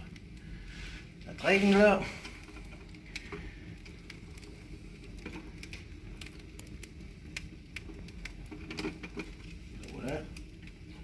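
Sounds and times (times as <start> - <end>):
fire low rush: 0.0 - 11.0
wood fire crackling: 0.0 - 11.0
sharp pops and snaps: 2.3 - 11.0.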